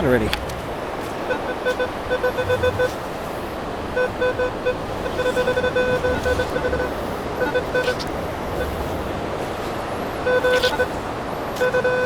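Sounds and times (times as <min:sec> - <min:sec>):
surf: 0:00.0 - 0:12.0
metal detector beeping: 0:01.0 - 0:03.0, 0:03.9 - 0:08.8, 0:10.2 - 0:12.0.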